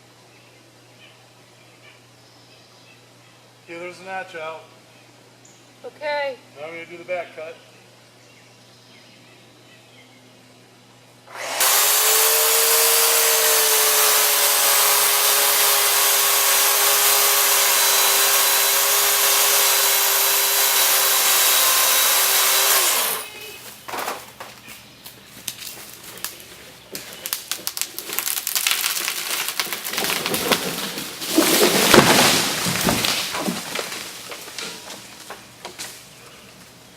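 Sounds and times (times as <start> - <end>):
electric chainsaw cutting wood: 11.3 - 23.4
wood cracking and snapping: 27.0 - 36.0.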